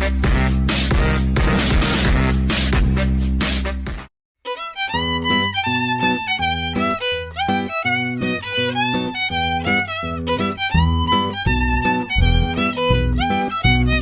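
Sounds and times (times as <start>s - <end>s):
bass line: 0.0s - 4.0s, 9.9s - 14.0s
bouncy violin melody: 4.4s - 14.0s.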